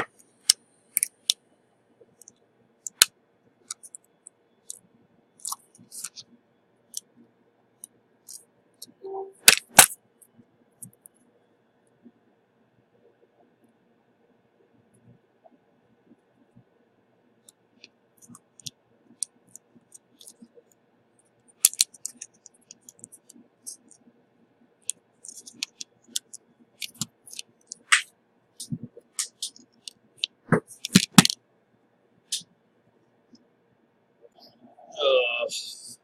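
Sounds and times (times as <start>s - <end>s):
tools and small parts clicking: 3.7s - 4.8s, 21.6s - 24.0s, 24.8s - 31.4s.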